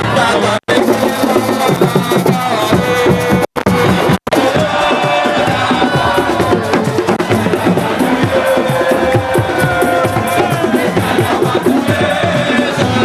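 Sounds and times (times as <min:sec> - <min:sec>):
fast rhythmic drumming: 0:00.0 - 0:13.0
melodic line over drums: 0:00.7 - 0:13.0.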